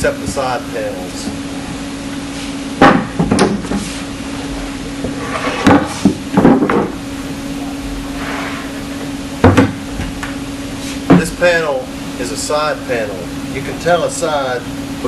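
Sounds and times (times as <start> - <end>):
steady low hum: 0.0 - 15.0
wooden panels knocking: 2.8 - 3.8, 5.6 - 7.0, 9.4 - 9.8.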